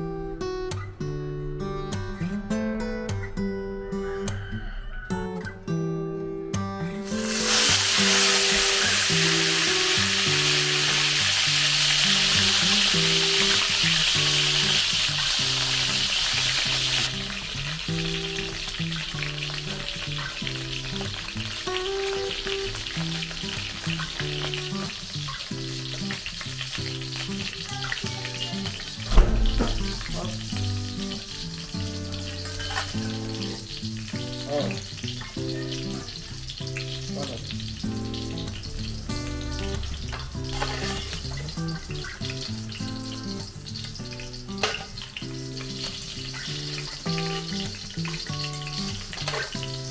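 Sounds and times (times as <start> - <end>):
fish frying in hot oil: 7.0 - 49.9
sharp loud knock: 29.1 - 30.7.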